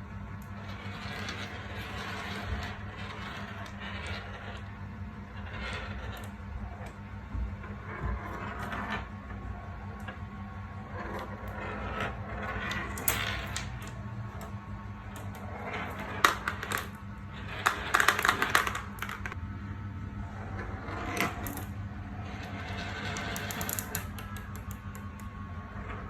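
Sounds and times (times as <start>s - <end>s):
low steady hum: 0.0s - 26.0s
marbles clicking on marble run: 11.0s - 19.4s, 22.5s - 25.3s.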